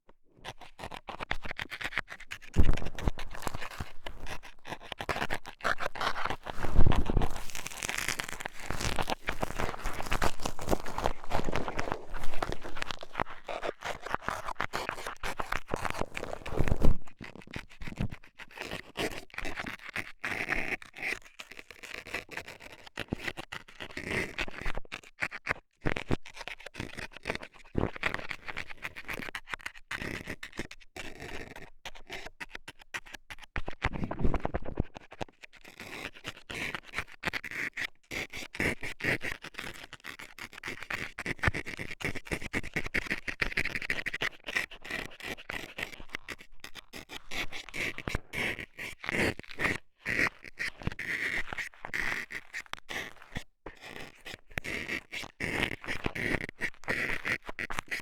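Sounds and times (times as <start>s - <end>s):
tool scraping in ear: 0.4s - 17.0s.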